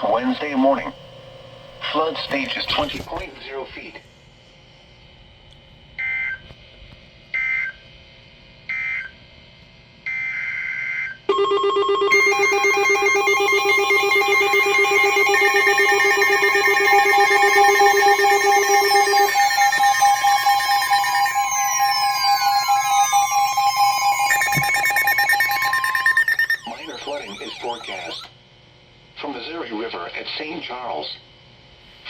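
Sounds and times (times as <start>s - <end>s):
steady electronic alert tone: 11.3s - 28.3s
two-tone digital data bursts: 12.1s - 28.3s.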